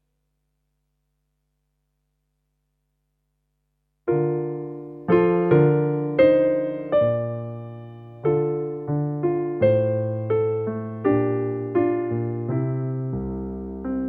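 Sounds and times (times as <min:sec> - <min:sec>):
piano chords: 0:04.1 - 0:14.0.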